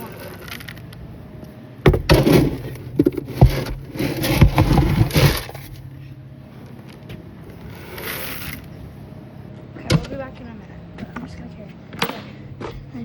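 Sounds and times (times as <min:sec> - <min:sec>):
objects clattering and scraping: 0:01.8 - 0:06.1
sharp knocks: 0:01.9 - 0:05.5.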